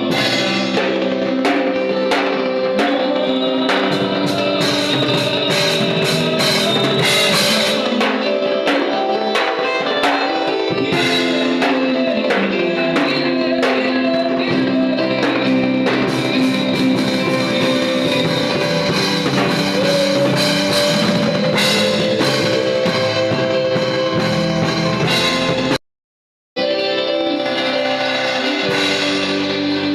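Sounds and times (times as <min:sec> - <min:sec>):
music with drum beat: 0:00.0 - 0:25.8, 0:27.3 - 0:29.9.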